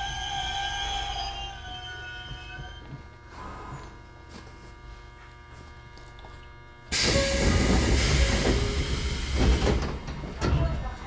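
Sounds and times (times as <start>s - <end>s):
train doors hissing open: 6.9s - 10.9s.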